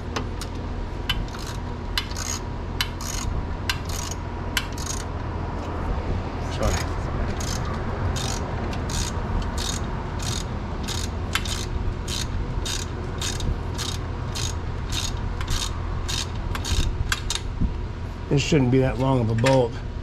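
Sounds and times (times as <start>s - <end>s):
steady low hum: 0.0s - 20.0s
ratchet wrench clicking: 1.1s - 5.1s, 6.7s - 17.4s.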